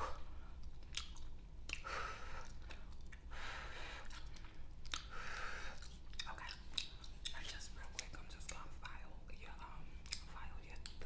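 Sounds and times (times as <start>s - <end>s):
gum chewing and smacking: 0.0s - 9.0s, 10.0s - 11.0s.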